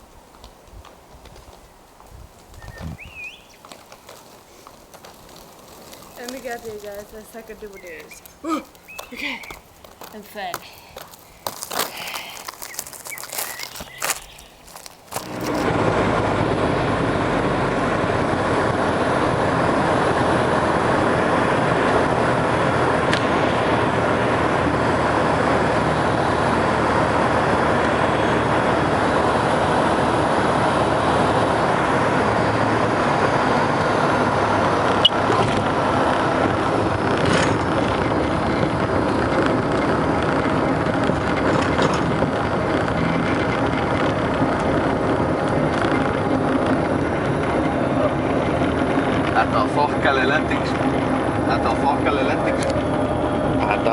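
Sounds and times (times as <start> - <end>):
airplane engine and propeller drone: 13.5 - 53.9.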